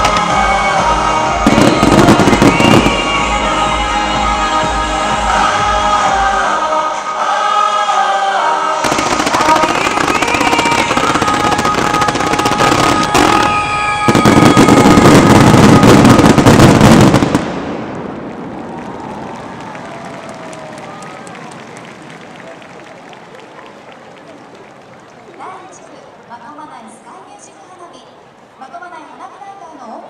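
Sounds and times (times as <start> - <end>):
fireworks crackling and banging: 0.0 - 3.6, 8.8 - 25.8
song with singing: 0.0 - 16.6.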